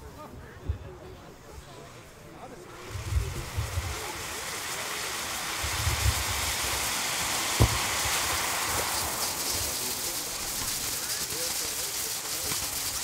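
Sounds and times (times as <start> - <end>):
firework fountain hissing: 0.0 - 13.0
short thump: 7.6 - 8.2.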